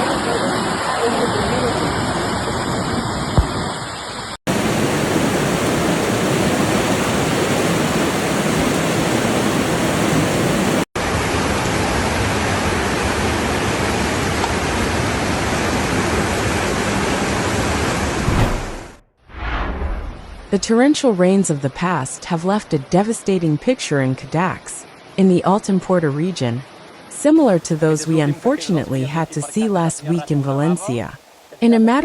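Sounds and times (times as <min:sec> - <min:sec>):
floodwater rushing: 0:00.0 - 0:18.1, 0:27.3 - 0:32.0.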